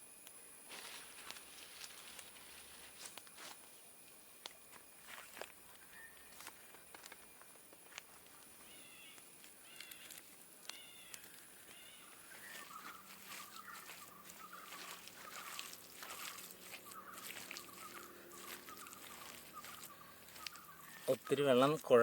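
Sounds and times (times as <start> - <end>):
steady high-pitched whine: 0.0 - 22.0
birds chirping and warbling: 5.6 - 22.0
small clicks: 9.1 - 11.8.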